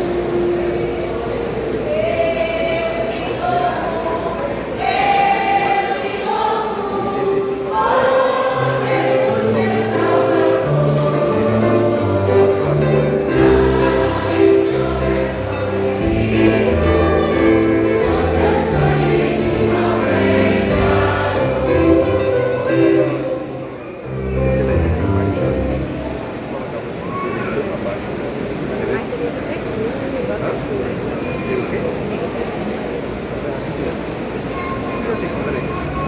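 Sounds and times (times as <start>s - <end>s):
choir singing a hymn: 0.0s - 26.6s
instrumental accompaniment: 7.3s - 26.3s.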